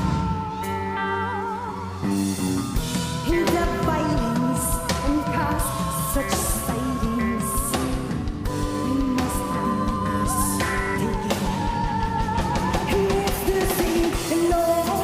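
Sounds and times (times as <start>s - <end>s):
drums and cymbals: 0.0s - 1.0s, 1.8s - 15.0s
rock band playing live: 0.0s - 15.0s
high female voice singing: 3.2s - 15.0s.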